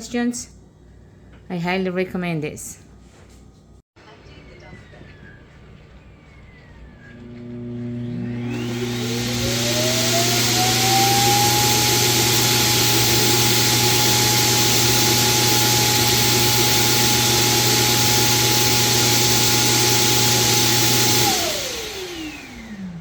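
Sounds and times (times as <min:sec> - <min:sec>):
suction motor whining: 0:06.1 - 0:23.0.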